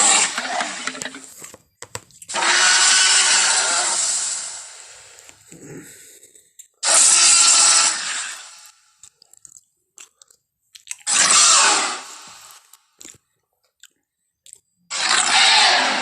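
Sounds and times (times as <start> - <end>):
dinosaur roar: 0.0 - 1.2, 2.3 - 4.7, 11.1 - 12.3, 14.9 - 16.0.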